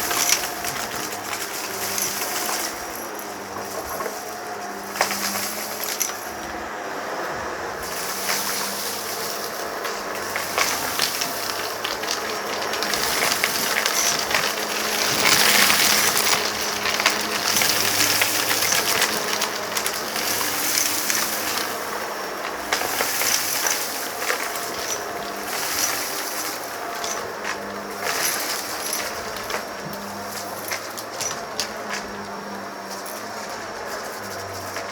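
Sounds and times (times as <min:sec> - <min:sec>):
vacuum cleaner running: 0:00.0 - 0:34.9
grit rattling into nozzle: 0:10.2 - 0:22.0.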